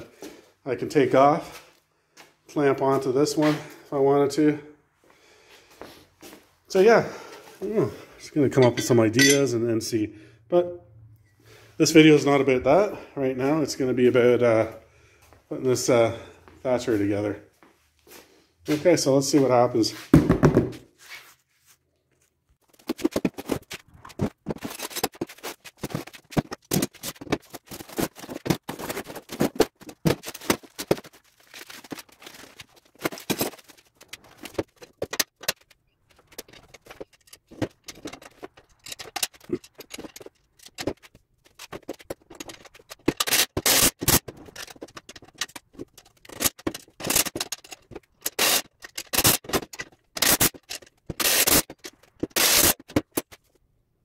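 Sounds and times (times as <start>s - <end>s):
scraping and clicking of parts: 22.1s - 53.6s.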